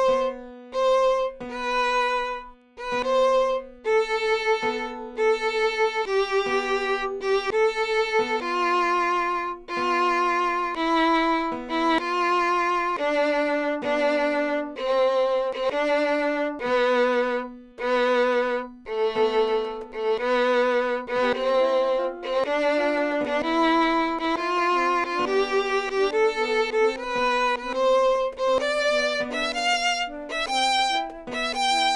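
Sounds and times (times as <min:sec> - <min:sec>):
solo violin melody: 0:00.0 - 0:31.9.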